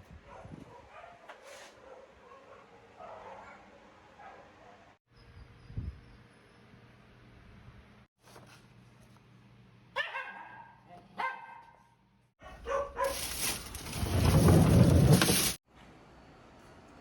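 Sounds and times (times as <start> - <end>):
dog barking: 0.2 - 5.0, 10.0 - 13.3.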